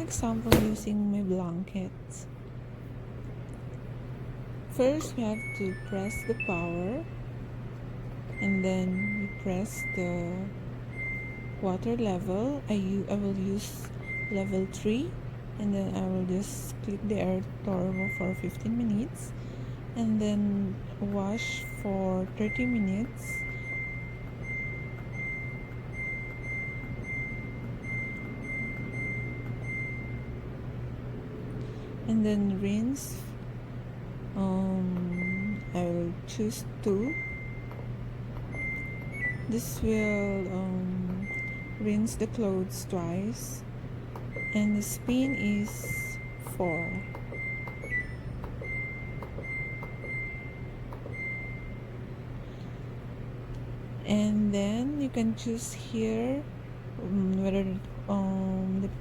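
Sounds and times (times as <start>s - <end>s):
washing machine control beeps: 0.0s - 1.0s, 4.8s - 7.5s, 8.2s - 19.4s, 20.0s - 31.0s, 34.4s - 52.9s
low steady hum: 0.0s - 59.0s.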